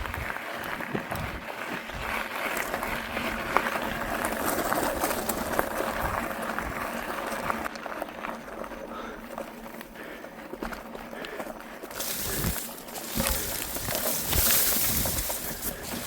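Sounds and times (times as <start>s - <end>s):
crunching over gravel: 0.0s - 16.0s.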